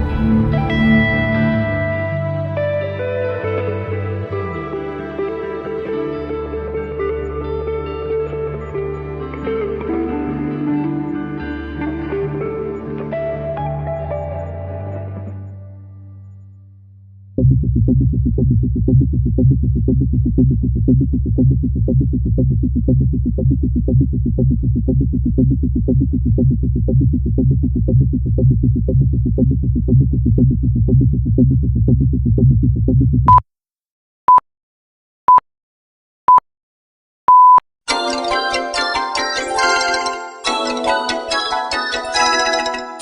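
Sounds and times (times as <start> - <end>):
electronic music with pulsing beat: 17.4 - 33.3, 37.9 - 43.0
bright chiming music: 37.9 - 43.0.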